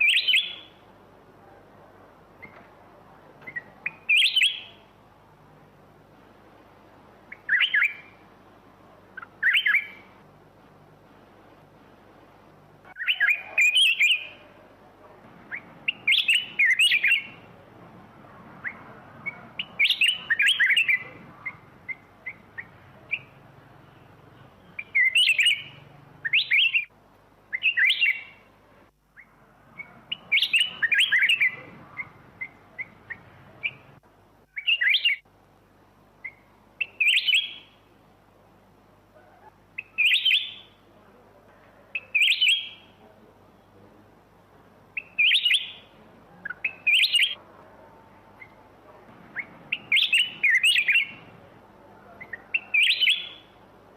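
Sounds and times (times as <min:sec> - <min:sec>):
bird chirps: 0:00.0 - 0:00.8, 0:03.4 - 0:04.9, 0:07.3 - 0:08.2, 0:09.1 - 0:10.2, 0:12.9 - 0:14.6, 0:15.4 - 0:17.5, 0:18.6 - 0:26.9, 0:27.5 - 0:28.5, 0:29.2 - 0:35.2, 0:36.2 - 0:37.9, 0:39.2 - 0:40.8, 0:41.9 - 0:43.0, 0:45.0 - 0:47.4, 0:49.2 - 0:51.4, 0:52.0 - 0:53.6
bird warbling song: 0:00.0 - 0:00.8, 0:03.4 - 0:04.8, 0:07.3 - 0:08.2, 0:09.1 - 0:10.1, 0:12.9 - 0:14.6, 0:15.5 - 0:17.5, 0:18.6 - 0:26.9, 0:27.5 - 0:28.5, 0:29.2 - 0:35.2, 0:36.2 - 0:37.8, 0:39.2 - 0:40.7, 0:45.0 - 0:47.4, 0:49.3 - 0:51.4, 0:52.0 - 0:53.6.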